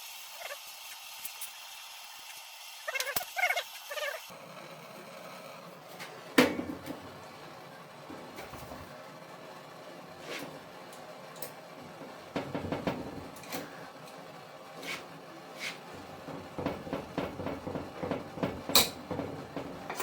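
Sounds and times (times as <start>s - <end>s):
hand tools clicking on metal: 16.3s - 20.0s.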